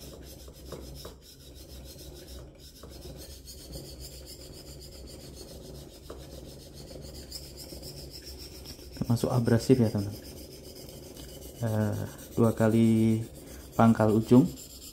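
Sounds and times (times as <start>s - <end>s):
knife scraping on whetstone: 0.0s - 14.9s.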